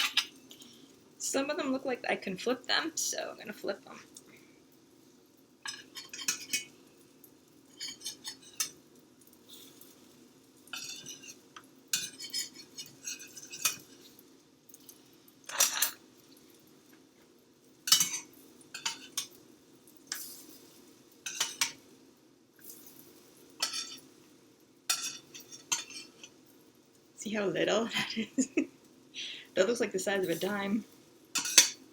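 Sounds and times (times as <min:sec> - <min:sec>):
spatula scraping frying pan: 0:05.7 - 0:06.7, 0:07.7 - 0:08.8, 0:10.7 - 0:14.2, 0:15.5 - 0:16.0, 0:17.9 - 0:19.4, 0:21.2 - 0:21.8, 0:23.6 - 0:24.0, 0:24.9 - 0:26.4, 0:31.3 - 0:31.8.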